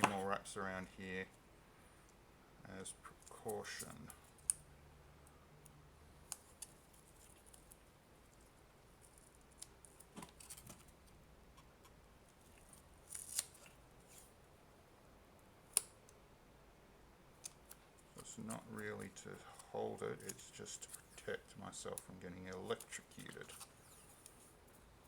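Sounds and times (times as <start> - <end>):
tape crackle: 12.3 - 14.4
tape handling: 12.5 - 14.4.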